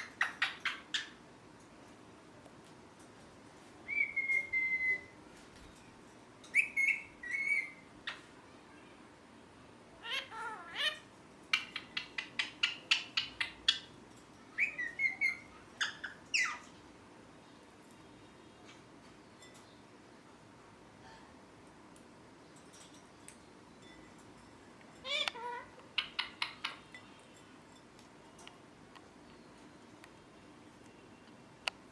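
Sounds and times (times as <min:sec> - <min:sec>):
parrot chirping: 0:00.0 - 0:01.2, 0:03.8 - 0:05.2, 0:06.5 - 0:08.3, 0:10.0 - 0:16.8, 0:25.0 - 0:27.0
parrot whistling: 0:03.9 - 0:05.2.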